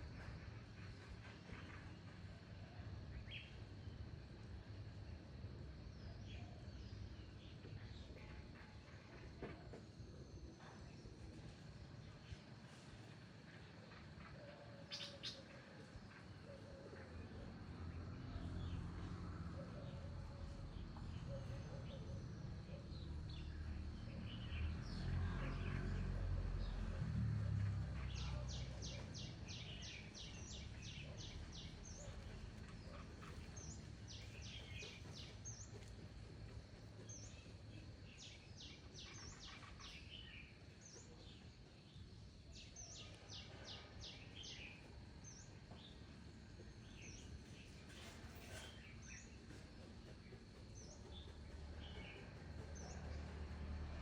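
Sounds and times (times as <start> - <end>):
small birds chirping: 27.9 - 53.4.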